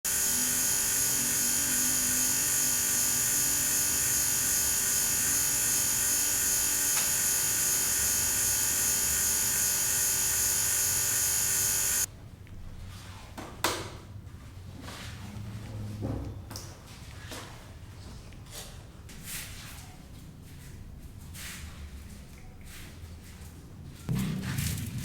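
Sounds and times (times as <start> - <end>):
high-pitched motor whine: 0.1 - 12.1.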